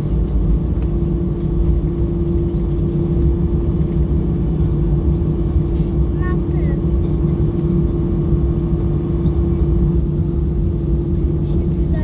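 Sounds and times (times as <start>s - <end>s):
airplane cabin rumble: 0.0s - 12.0s
constant low hum: 0.0s - 12.0s.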